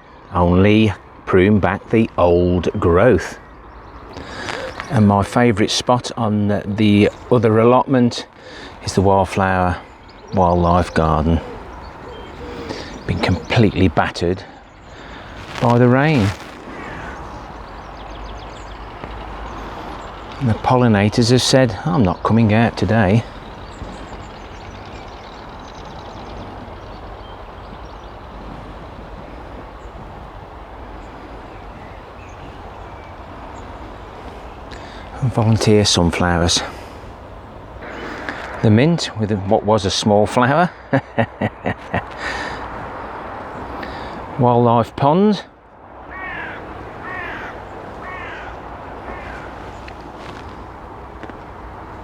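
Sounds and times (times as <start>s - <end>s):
crow cawing: 37.8s - 38.7s, 46.1s - 50.4s.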